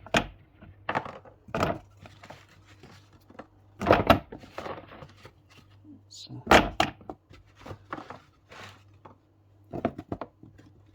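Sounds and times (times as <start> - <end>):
objects knocking and clattering: 9.0 - 10.9.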